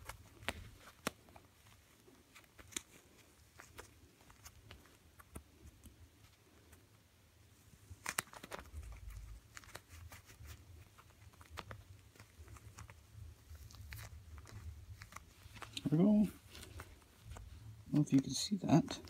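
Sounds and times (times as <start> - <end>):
plastic clicks and rustles: 7.9 - 19.0.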